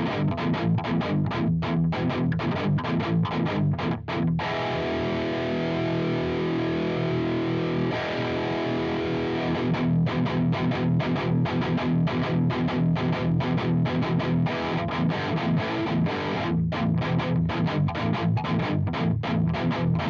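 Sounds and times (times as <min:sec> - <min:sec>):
distorted electric guitar riff: 0:00.0 - 0:20.0.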